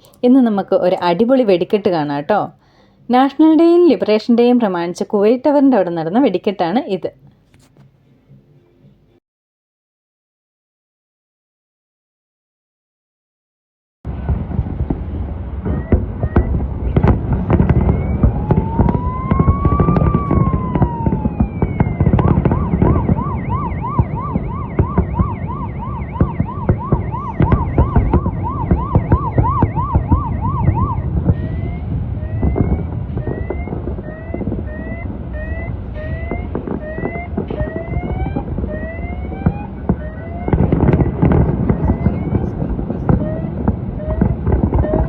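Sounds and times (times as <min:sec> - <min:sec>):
fireworks booming and cracking: 0:14.1 - 0:45.0
siren wailing and yelping: 0:15.6 - 0:45.0.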